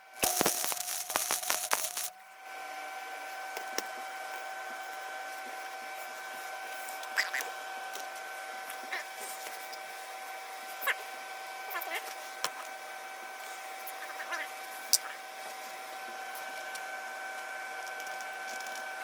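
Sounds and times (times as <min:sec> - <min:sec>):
steady motor hum: 0:00.0 - 0:19.0
crackling burst with ticks: 0:00.2 - 0:02.1.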